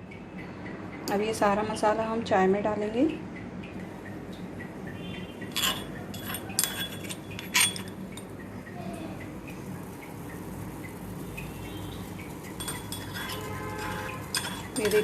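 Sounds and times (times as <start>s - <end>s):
steady low hum: 0.0s - 15.0s
metallic clinks and taps: 5.4s - 8.6s, 12.2s - 15.0s.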